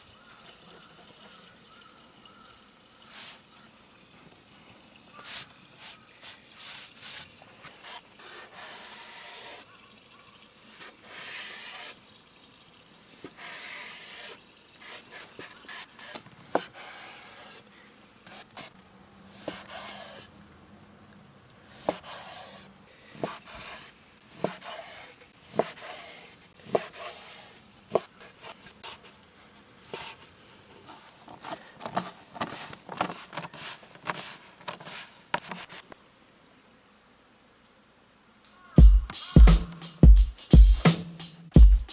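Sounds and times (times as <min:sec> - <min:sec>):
utensils scraping in a pan: 0:30.8 - 0:35.9.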